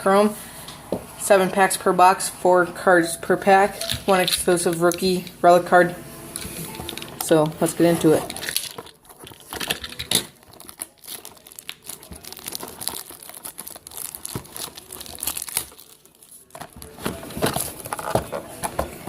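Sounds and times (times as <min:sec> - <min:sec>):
plastic wrap crinkling and tearing: 0:08.0 - 0:18.8.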